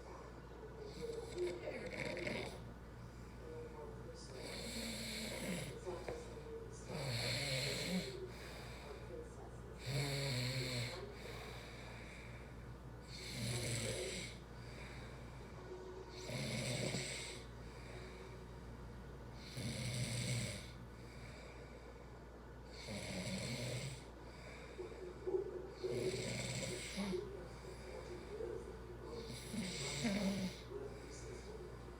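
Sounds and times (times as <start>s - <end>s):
steady low hum: 0.0s - 31.9s
person snoring: 0.9s - 2.6s, 4.4s - 5.8s, 6.9s - 8.6s, 9.8s - 11.7s, 13.1s - 15.0s, 16.1s - 18.2s, 19.4s - 20.8s, 22.7s - 24.1s, 25.8s - 27.9s, 29.2s - 30.8s.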